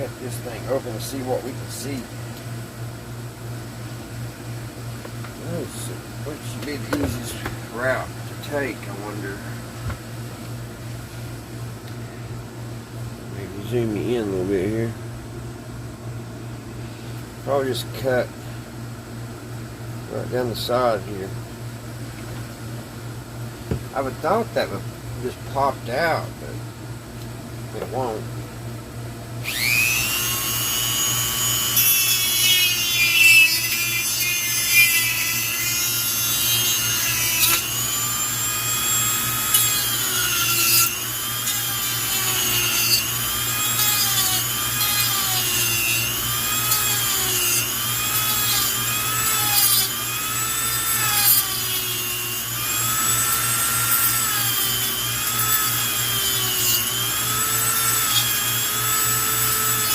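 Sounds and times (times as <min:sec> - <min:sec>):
high-speed power tool whining: 0:29.4 - 0:59.9.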